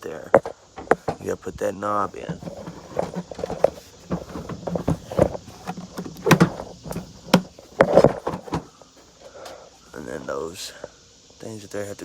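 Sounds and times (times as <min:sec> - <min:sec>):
hard plastic clicking and knocking: 0:00.3 - 0:01.4, 0:02.2 - 0:08.7.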